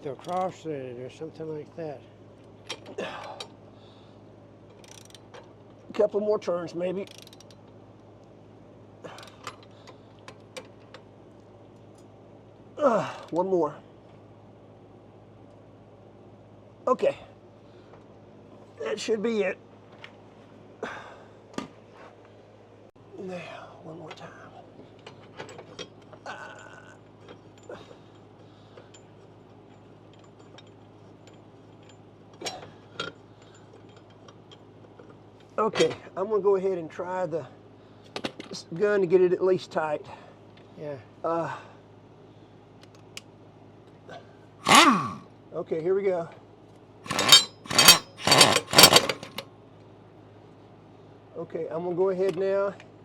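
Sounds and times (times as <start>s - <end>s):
socket ratchet clicking: 4.8s - 5.2s, 7.1s - 7.6s, 44.7s - 44.9s, 47.1s - 49.4s
small metal clinks: 47.1s - 49.4s.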